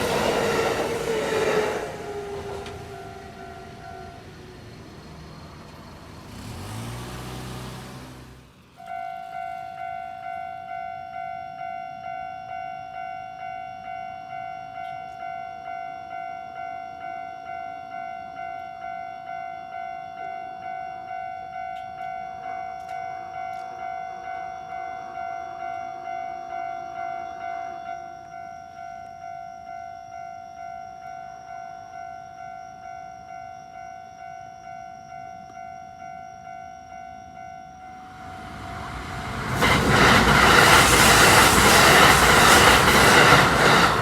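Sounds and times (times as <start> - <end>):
level crossing warning bell: 0.0 - 6.9, 8.8 - 44.0
electric train passing: 0.0 - 8.9, 21.8 - 44.0.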